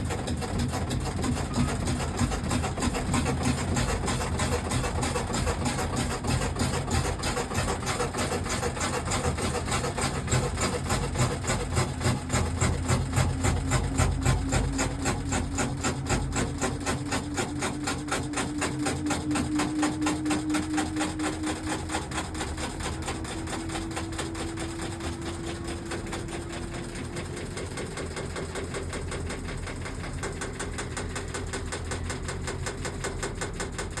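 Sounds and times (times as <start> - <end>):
rapid rattling knock: 0.0 - 34.0
washing machine spinning: 0.0 - 34.0
motor whine rising in pitch: 1.5 - 28.7.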